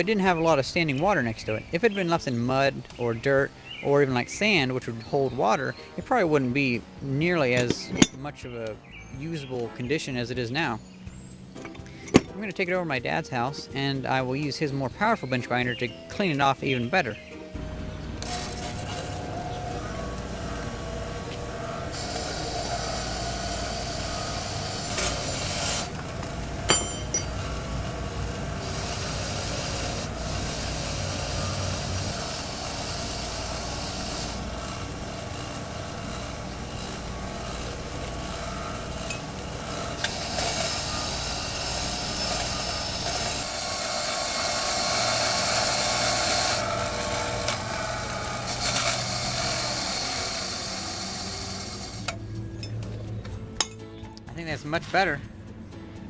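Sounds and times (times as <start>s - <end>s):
bench grinder motor whine: 17.5s - 52.2s
metal grinding hiss: 17.6s - 52.2s.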